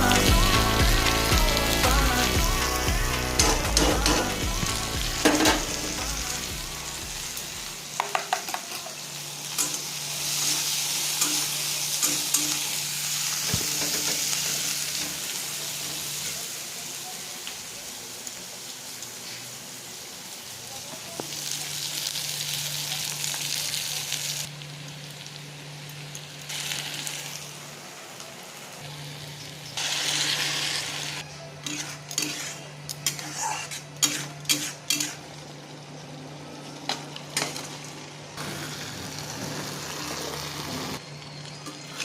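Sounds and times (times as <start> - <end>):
food sizzling in a pan: 0.0 - 42.0
spatula scraping a pan: 31.6 - 35.2.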